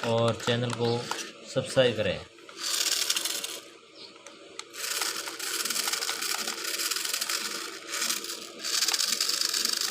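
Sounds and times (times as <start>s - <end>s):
toy car motor whirring: 2.6s - 3.7s, 4.7s - 9.9s.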